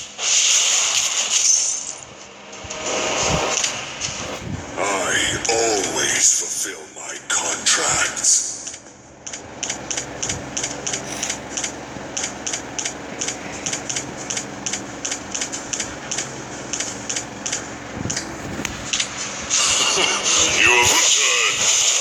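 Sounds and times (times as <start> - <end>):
faint hum: 0.0 - 22.0
regular clicking: 8.6 - 19.1.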